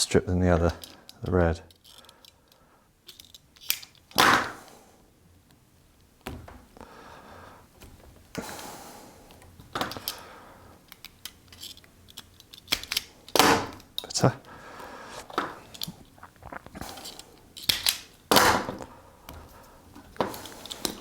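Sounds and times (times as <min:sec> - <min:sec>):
wire strippers clicking: 0:16.9 - 0:21.0.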